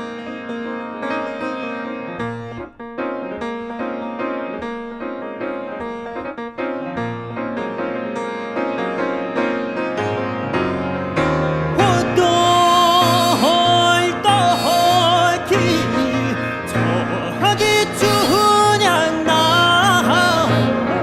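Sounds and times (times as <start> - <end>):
piano chords: 0.0 - 21.0
sliding pitch melody line: 11.7 - 21.0.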